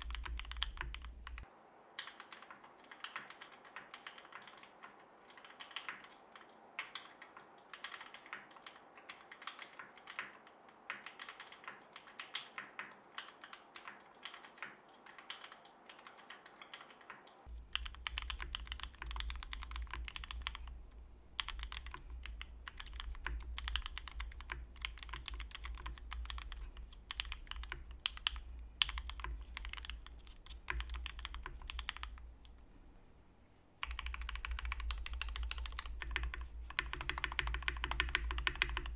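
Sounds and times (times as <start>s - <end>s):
low steady hum: 0.0s - 6.8s, 17.4s - 38.9s
mechanical keyboard typing: 0.0s - 20.7s, 21.4s - 32.2s, 33.8s - 38.9s.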